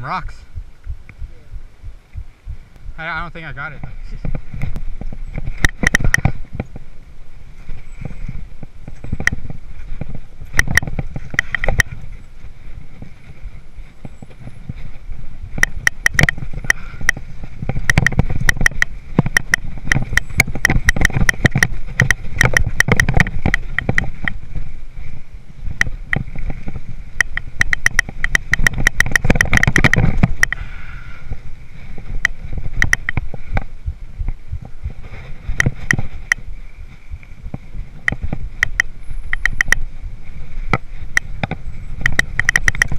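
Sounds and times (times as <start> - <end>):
tyres rumbling on rocky trail: 0.0 - 42.9
bike chain and frame rattling: 7.6 - 25.1, 25.9 - 33.6, 34.6 - 42.9.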